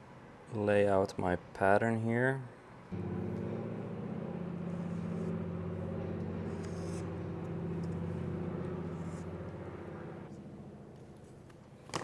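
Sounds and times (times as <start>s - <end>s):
low engine hum: 2.9s - 11.5s.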